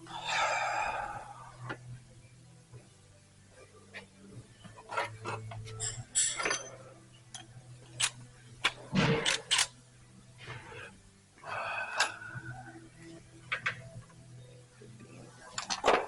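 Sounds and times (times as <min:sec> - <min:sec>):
metal rattle: 0:04.8 - 0:09.7
metal engine parts clinking: 0:04.8 - 0:09.8, 0:15.5 - 0:16.0
ringing metal scrape: 0:05.7 - 0:06.9.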